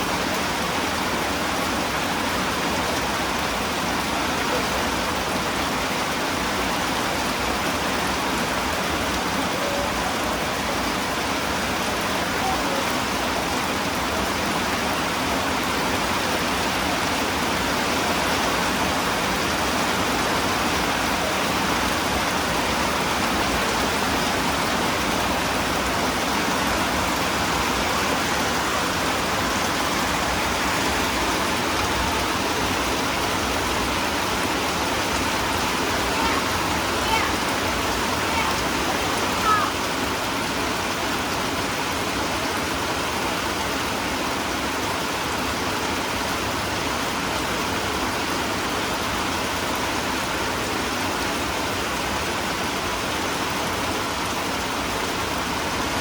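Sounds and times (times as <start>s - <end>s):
rain falling: 0.0s - 56.0s.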